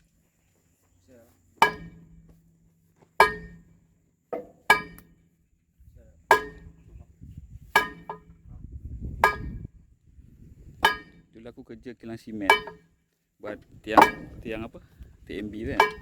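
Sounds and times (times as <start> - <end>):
hammer striking steel: 1.6 - 2.3, 3.2 - 3.8, 4.4 - 5.2, 6.3 - 6.8, 7.8 - 8.3, 9.2 - 9.6, 10.8 - 11.2, 12.5 - 12.8, 14.0 - 14.5, 15.8 - 16.0.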